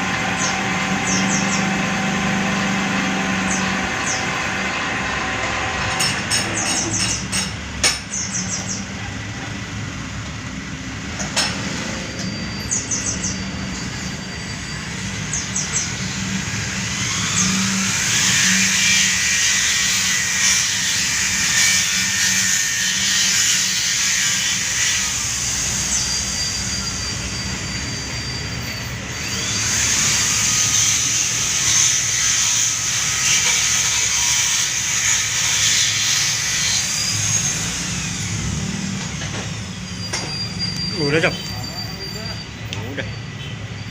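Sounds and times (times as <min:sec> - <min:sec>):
lathe motor hum: 0:00.0 - 0:06.3, 0:15.8 - 0:28.2
lathe tool scraping hiss: 0:11.6 - 0:42.6.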